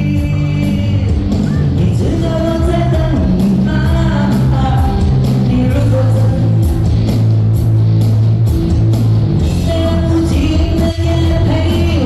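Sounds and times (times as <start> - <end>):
person singing: 0.0 - 7.0, 9.5 - 12.0
band playing: 0.0 - 12.0
held bass notes: 0.0 - 12.0
steady drum beat: 0.0 - 12.0.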